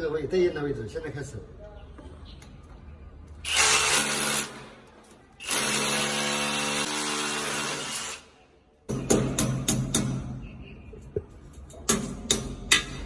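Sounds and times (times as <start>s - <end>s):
power drill boring into tile: 5.4s - 8.2s.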